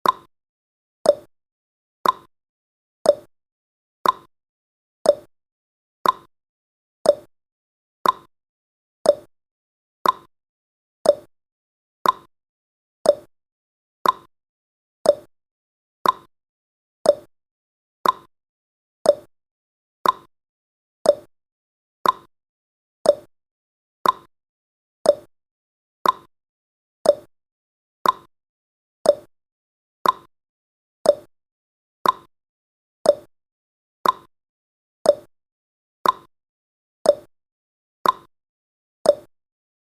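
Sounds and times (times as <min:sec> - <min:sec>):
timer ticking: 0:00.0 - 0:00.3, 0:01.1 - 0:01.3, 0:02.0 - 0:02.3, 0:03.1 - 0:03.3, 0:04.0 - 0:04.3, 0:05.1 - 0:05.3, 0:06.0 - 0:06.3, 0:07.1 - 0:07.3, 0:08.0 - 0:08.3, 0:09.0 - 0:09.3, 0:10.0 - 0:10.3, 0:11.0 - 0:11.3, 0:12.0 - 0:12.3, 0:13.0 - 0:13.3, 0:14.0 - 0:14.3, 0:15.0 - 0:15.3, 0:16.0 - 0:16.3, 0:17.0 - 0:17.3, 0:18.0 - 0:18.3, 0:19.0 - 0:19.3, 0:20.0 - 0:20.3, 0:21.0 - 0:21.3, 0:22.0 - 0:22.3, 0:23.0 - 0:23.3, 0:24.0 - 0:24.3, 0:25.0 - 0:25.3, 0:26.0 - 0:26.3, 0:27.0 - 0:27.3, 0:28.0 - 0:28.3, 0:29.0 - 0:29.3, 0:30.0 - 0:30.3, 0:31.0 - 0:31.3, 0:32.0 - 0:32.3, 0:33.0 - 0:33.3, 0:34.0 - 0:34.3, 0:35.1 - 0:35.3, 0:36.0 - 0:36.3, 0:37.1 - 0:37.3, 0:38.0 - 0:38.3, 0:39.1 - 0:39.3.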